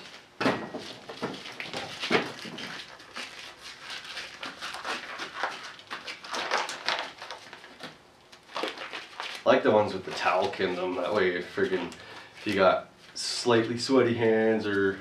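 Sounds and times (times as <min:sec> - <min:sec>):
rubber glove rustling and snapping: 0:01.1 - 0:12.7.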